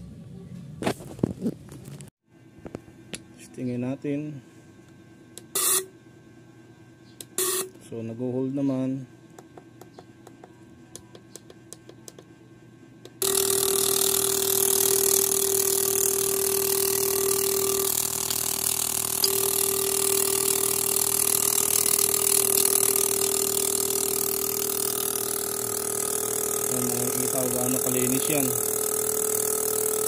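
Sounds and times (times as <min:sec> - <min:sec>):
machine humming: 0:07.2 - 0:30.0.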